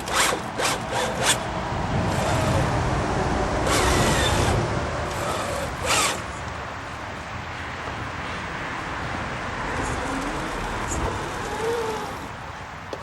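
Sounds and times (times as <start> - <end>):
small electric motor whining: 0.0 - 2.8, 3.6 - 6.5, 9.7 - 13.0.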